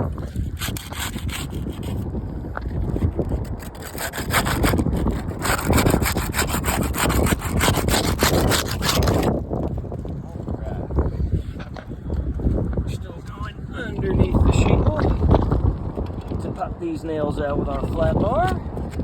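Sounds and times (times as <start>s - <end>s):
putty knife scraping shingles: 0.2s - 2.1s, 2.7s - 9.4s.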